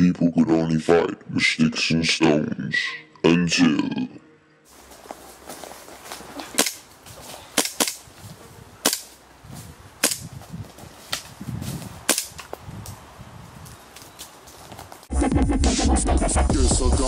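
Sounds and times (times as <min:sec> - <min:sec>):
airsoft pistol popping shots: 0:07.6 - 0:08.0, 0:08.8 - 0:09.2, 0:10.0 - 0:10.3, 0:12.1 - 0:12.4.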